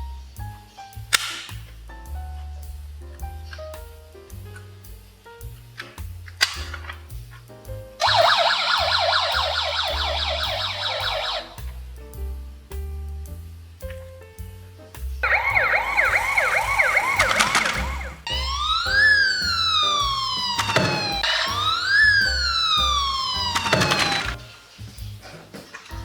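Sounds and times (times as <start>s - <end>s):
background music with beat: 0.0s - 26.0s
siren wailing: 8.0s - 11.5s, 15.2s - 24.4s
siren yelping: 8.0s - 11.6s, 15.2s - 24.4s.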